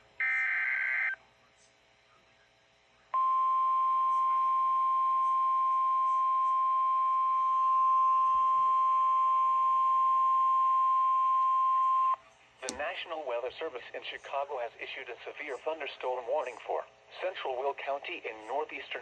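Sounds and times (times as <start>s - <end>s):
weather radio alert tone: 0.2s - 1.2s.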